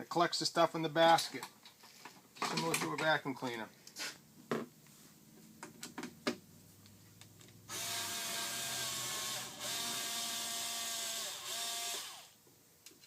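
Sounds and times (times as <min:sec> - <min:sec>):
cordless drill whirring: 0:07.7 - 0:12.4.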